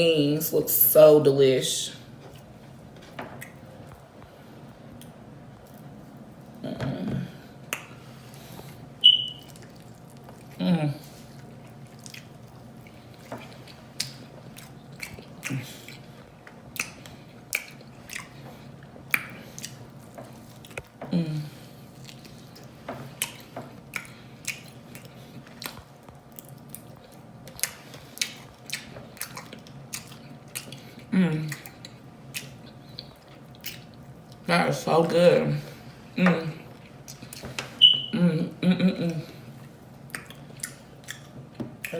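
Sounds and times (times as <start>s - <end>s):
person chewing and smacking food: 2.2s - 6.6s, 7.6s - 34.5s, 36.6s - 38.1s, 39.3s - 41.9s.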